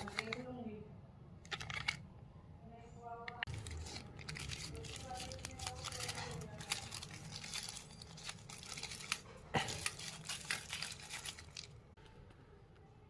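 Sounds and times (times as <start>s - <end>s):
packaging crinkling and tearing: 3.5s - 11.9s.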